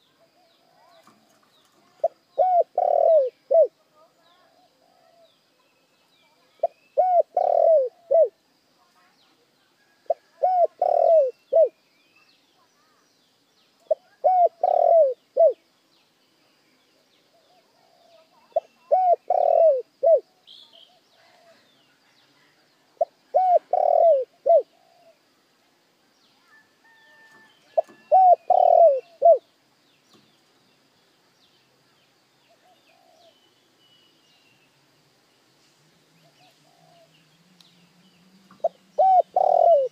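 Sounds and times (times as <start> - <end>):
dove cooing: 1.8 - 3.8, 6.6 - 8.4, 10.1 - 11.8, 13.9 - 15.6, 17.3 - 20.3, 23.0 - 25.2, 27.7 - 29.5, 32.6 - 33.4, 36.2 - 37.1, 38.6 - 39.9.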